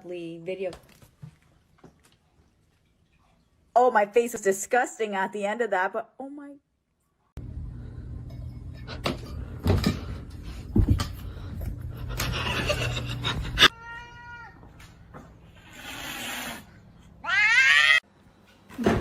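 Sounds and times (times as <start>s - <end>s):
steady low hum: 7.4s - 13.7s
cat meowing: 13.7s - 14.7s, 17.2s - 18.0s.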